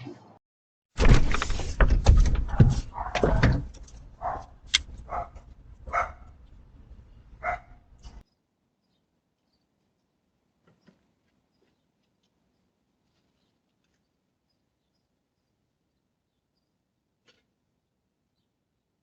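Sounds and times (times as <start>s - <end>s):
dog barking: 2.4s - 6.4s, 7.4s - 8.2s.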